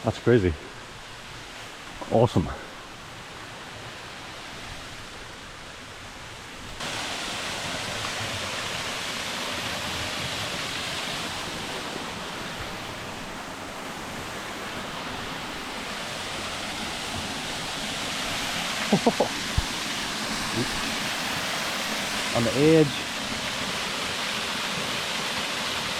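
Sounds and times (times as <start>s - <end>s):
waterfall pouring into pool: 6.8s - 10.8s, 18.1s - 25.9s.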